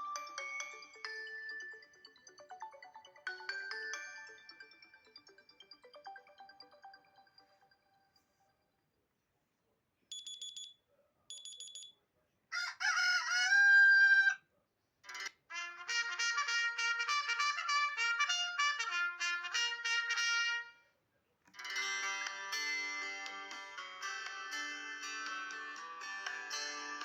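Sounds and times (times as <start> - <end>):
rooster crow alarm: 12.5 - 14.4.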